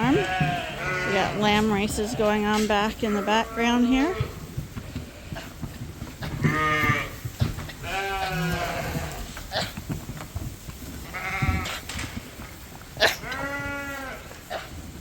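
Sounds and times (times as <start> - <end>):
lambs bleating: 0.0 - 4.5, 6.2 - 9.9, 11.0 - 14.8.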